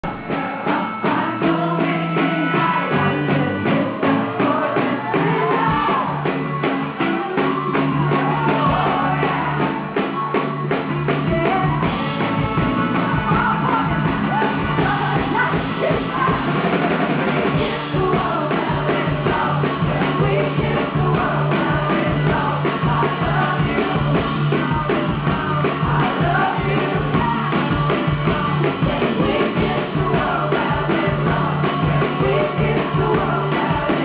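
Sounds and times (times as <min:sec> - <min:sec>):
driving drumbeat: 0:00.0 - 0:34.0
live rock band playing: 0:00.0 - 0:34.0
woman singing: 0:00.1 - 0:06.3, 0:08.0 - 0:09.8, 0:11.2 - 0:34.0.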